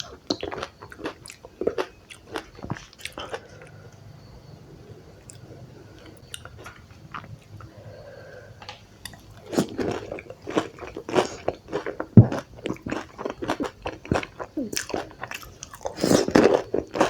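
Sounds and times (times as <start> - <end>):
wet chewing: 0.0 - 4.0.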